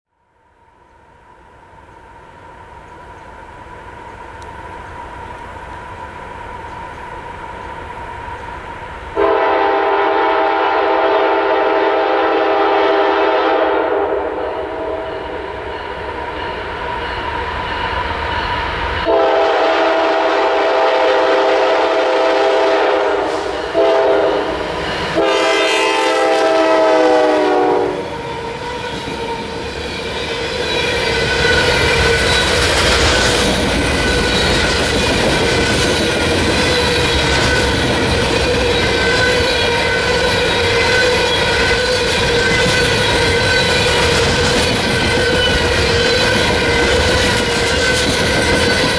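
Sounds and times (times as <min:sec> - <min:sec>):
locomotive air horn: 0:09.2 - 0:15.2, 0:19.1 - 0:29.6
locomotive rumble: 0:20.4 - 0:48.9
train wheels clattering on rails: 0:20.4 - 0:48.9.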